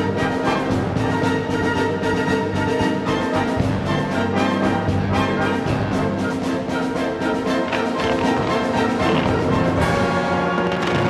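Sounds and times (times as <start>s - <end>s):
loud orchestral music: 0.0s - 11.0s.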